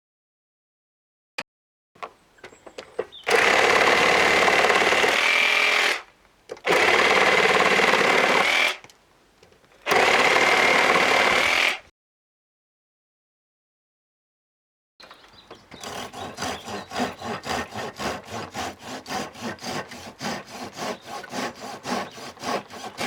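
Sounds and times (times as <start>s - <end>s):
reciprocating saw cutting branch: 15.3s - 23.0s.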